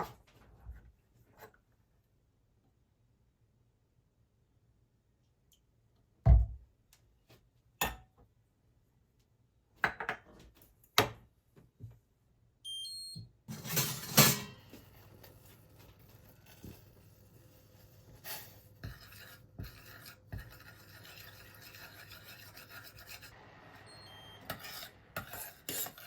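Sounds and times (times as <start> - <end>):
kitchen appliance beeps: 12.6 - 13.4, 23.6 - 24.6.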